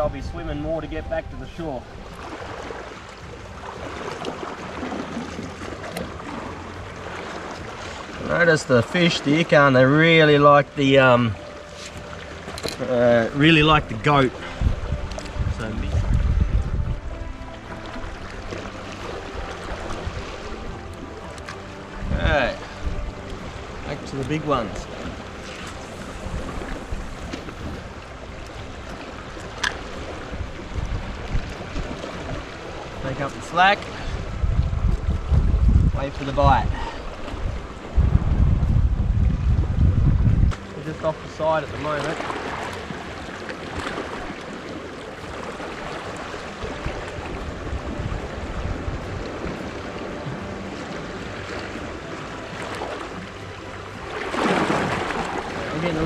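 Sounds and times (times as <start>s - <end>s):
wind rumbling on microphone: 0.0s - 8.4s, 11.2s - 56.0s
sea waves washing over rocks: 0.0s - 56.0s
wave surging in: 18.9s - 29.4s.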